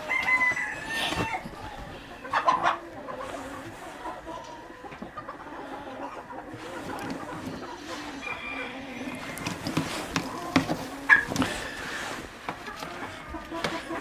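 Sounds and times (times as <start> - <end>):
chickens clucking: 0.0 - 14.0.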